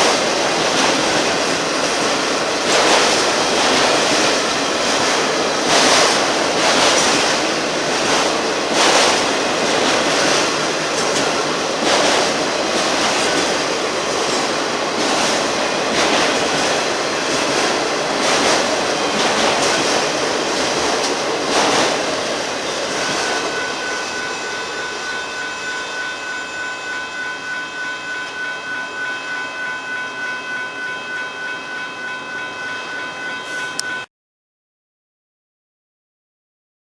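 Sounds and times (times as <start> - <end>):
train wheels clicking over rail joints: 0.0 - 24.4
pulsing high ringing tone: 7.2 - 34.1.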